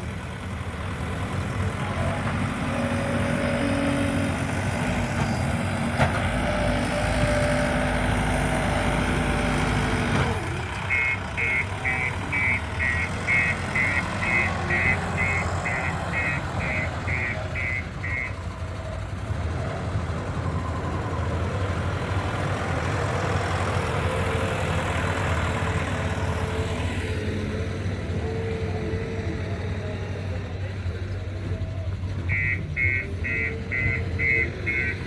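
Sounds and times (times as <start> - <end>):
diesel engine running: 0.0 - 35.0
reversing alarm beeping: 10.8 - 18.7, 32.3 - 35.0.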